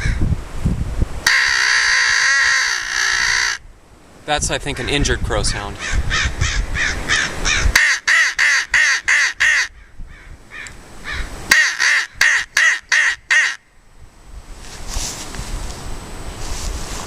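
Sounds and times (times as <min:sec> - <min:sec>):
crow call caws: 0:01.3 - 0:03.6, 0:05.8 - 0:13.6.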